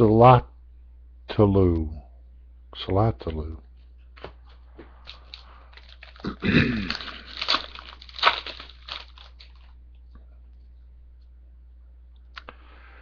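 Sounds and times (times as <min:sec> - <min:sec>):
low hum: 0:00.0 - 0:13.0
foil pack tearing and crinkling: 0:05.0 - 0:09.7.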